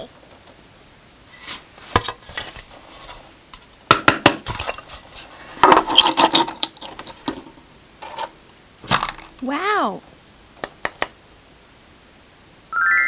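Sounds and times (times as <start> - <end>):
small hard objects clinking: 5.7 - 7.2.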